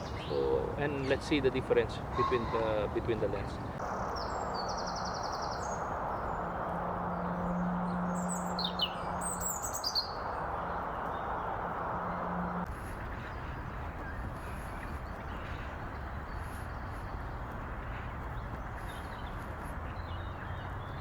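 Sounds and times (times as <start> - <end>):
small birds chirping: 0.0 - 21.0
low hum: 3.8 - 17.8.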